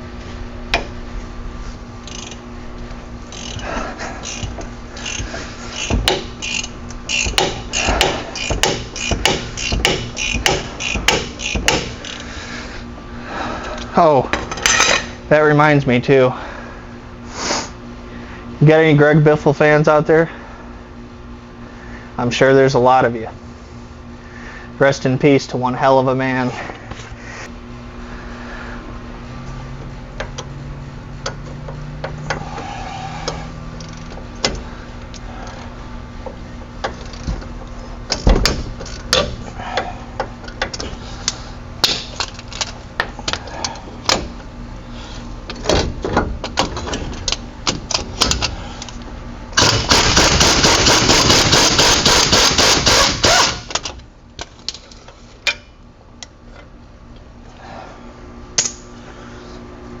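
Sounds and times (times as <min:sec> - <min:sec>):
impact wrench rattling: 0:02.0 - 0:02.4, 0:03.2 - 0:12.3, 0:49.6 - 0:53.9.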